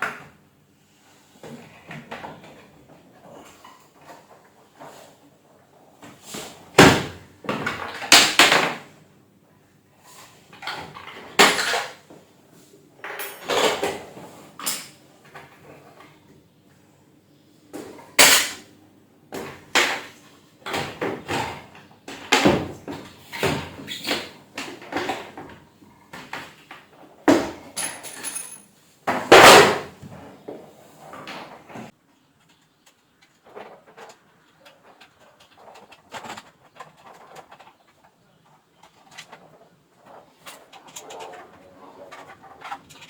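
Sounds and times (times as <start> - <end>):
hard objects clattering: 27.7 - 28.7.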